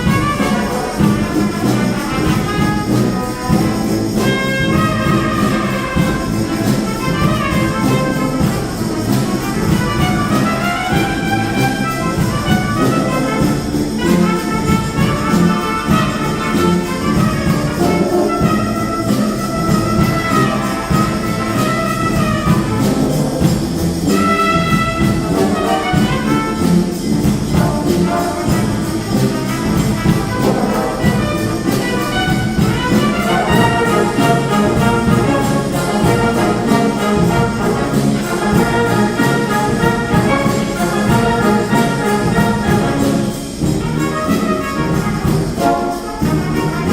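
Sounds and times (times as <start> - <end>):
trumpets and trombones: 0.0 - 46.9
wind band playing: 0.0 - 46.9.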